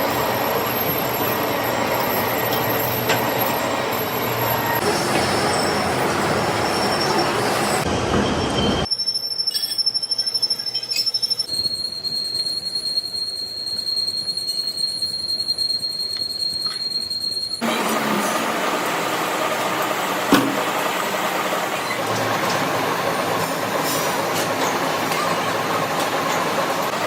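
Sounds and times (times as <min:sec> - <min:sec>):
metal grinding machinery: 0:00.0 - 0:08.9, 0:16.3 - 0:27.0.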